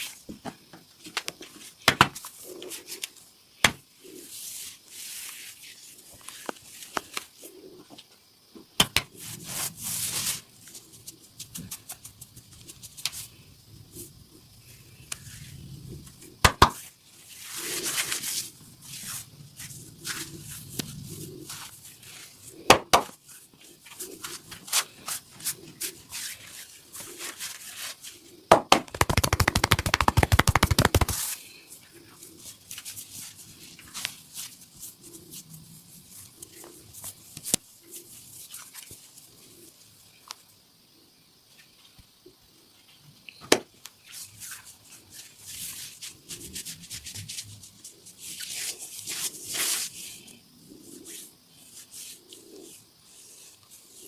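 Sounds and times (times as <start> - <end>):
hands slapping skin: 16.4 - 16.8, 28.5 - 31.3
rapid chopping taps: 28.5 - 31.2
hands rubbing skin: 28.8 - 31.4.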